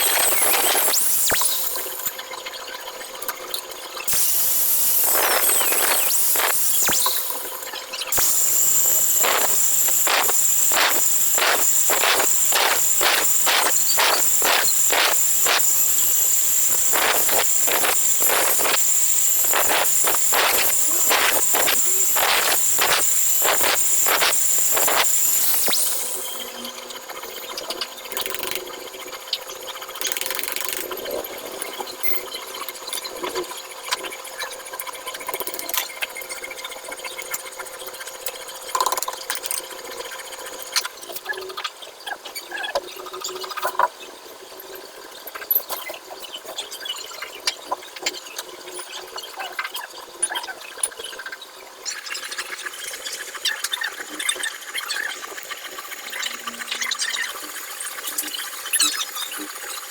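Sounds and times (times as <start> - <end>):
angle grinder whining: 0.0 - 2.1, 4.1 - 26.8
rasping cutting strokes: 4.1 - 26.6.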